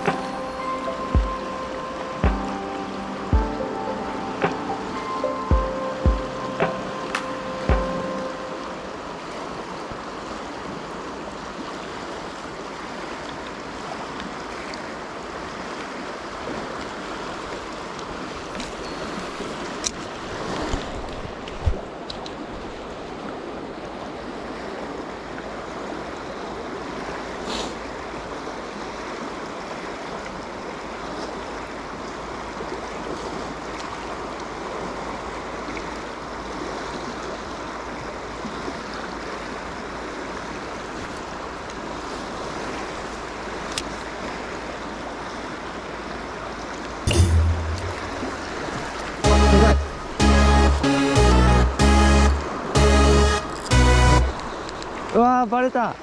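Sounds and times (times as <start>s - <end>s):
water rushing over rocks: 0.0s - 51.0s
sharp clicks and knocks: 7.0s - 7.3s.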